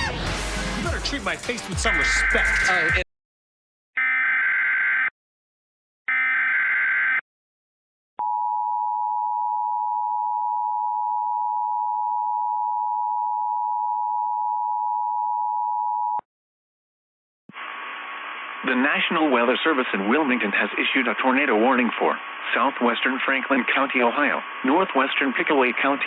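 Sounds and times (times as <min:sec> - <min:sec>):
harsh digital data screeches: 0:01.1 - 0:03.0
two-tone attention signal: 0:01.9 - 0:03.0.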